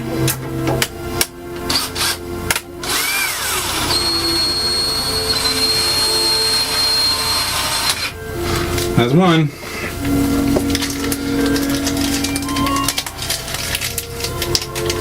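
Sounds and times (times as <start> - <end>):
screw gun whining: 1.2 - 8.9.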